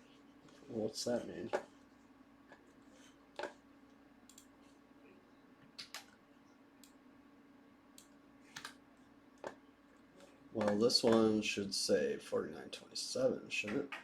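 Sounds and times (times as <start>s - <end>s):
faint clicks and taps: 2.5s - 4.8s, 9.4s - 11.3s.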